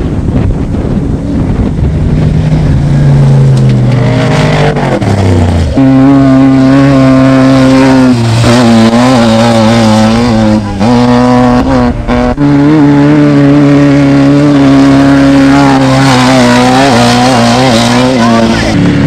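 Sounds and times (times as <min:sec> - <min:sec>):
engine revving loud: 0:01.2 - 0:19.0.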